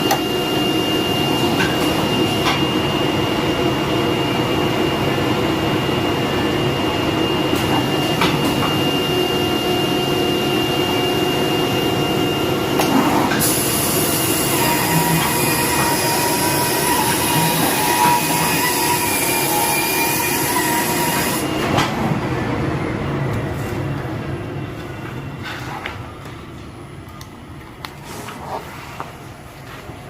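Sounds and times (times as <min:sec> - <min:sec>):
cutting machine running: 0:08.0 - 0:21.8.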